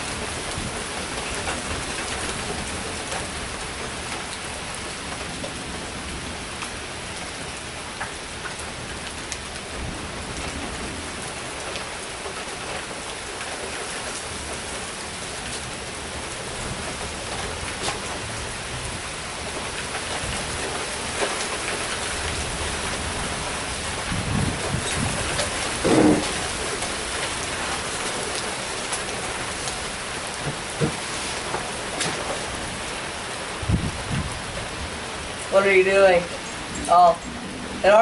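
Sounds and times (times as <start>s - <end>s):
heavy rain falling: 0.0s - 38.0s
low thunder rumble: 9.6s - 11.6s, 22.0s - 27.8s, 33.5s - 38.0s.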